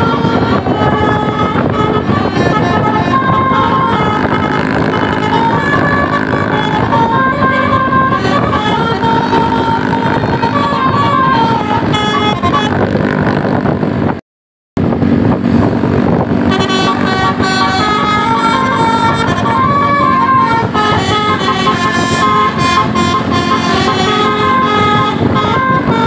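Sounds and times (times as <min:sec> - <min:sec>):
bus horn playing a melody: 0:00.0 - 0:13.7, 0:16.1 - 0:26.0
steady low rumble: 0:00.0 - 0:14.2.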